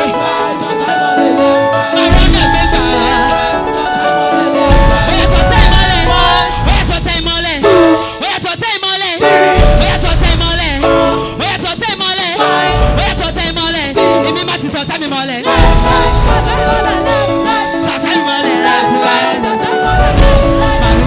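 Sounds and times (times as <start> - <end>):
held instrumental chords: 0.0 - 8.4, 9.2 - 21.0
voices singing: 0.0 - 21.0
deep bass line: 2.1 - 3.9, 4.6 - 8.0, 9.6 - 11.6, 12.7 - 14.3, 15.6 - 17.6, 19.9 - 21.0.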